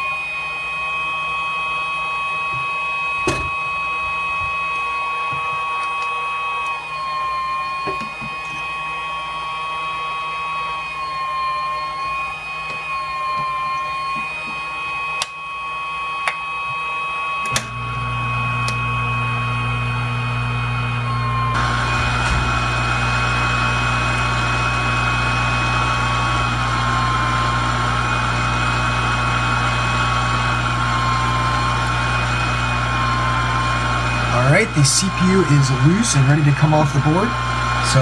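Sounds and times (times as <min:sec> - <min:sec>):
steady wavering whine: 0:17.9 - 0:38.0.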